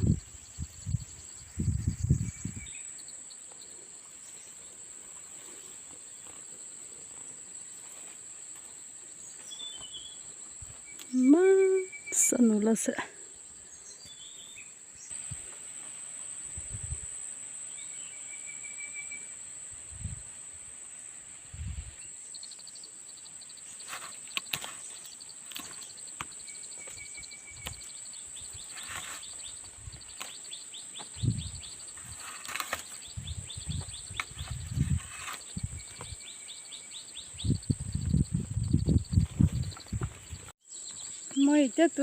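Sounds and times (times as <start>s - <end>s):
insect high-pitched drone: 10.0s - 42.0s
fast repeated insect chirping: 21.6s - 42.0s
handling thumps and rustles: 38.9s - 40.5s.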